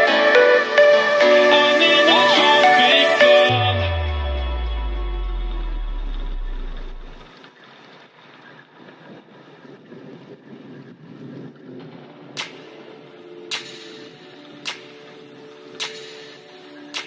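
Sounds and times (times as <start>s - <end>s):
background music: 0.0s - 7.2s, 12.2s - 17.0s
sharp click: 12.4s - 12.7s, 13.5s - 14.0s, 14.6s - 14.9s, 15.8s - 16.3s.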